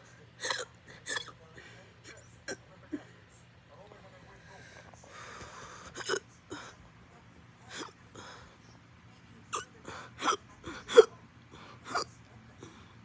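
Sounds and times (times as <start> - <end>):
person hiccuping: 0.4 - 1.4, 6.0 - 6.3, 9.5 - 11.1, 11.9 - 12.1
quick breaths: 4.3 - 6.8.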